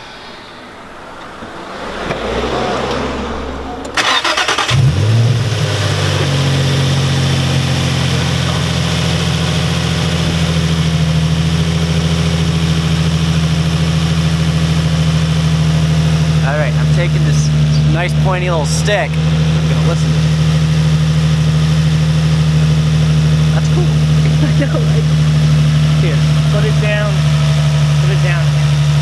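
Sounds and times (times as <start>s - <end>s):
car engine cranking and idling: 0.0s - 29.0s.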